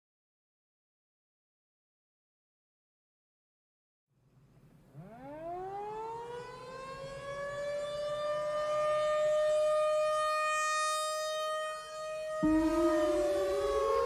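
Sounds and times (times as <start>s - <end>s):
civil defense siren wailing: 5.0s - 14.0s.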